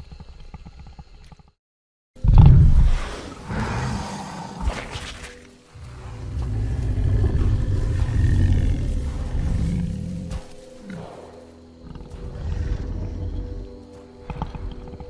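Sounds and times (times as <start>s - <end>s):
deep monster growl: 2.2s - 4.9s, 5.8s - 11.1s, 11.8s - 15.0s.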